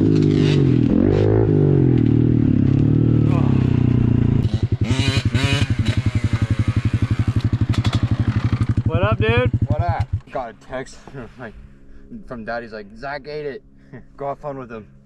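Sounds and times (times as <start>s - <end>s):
pit bike engine idling: 2.3s - 12.1s.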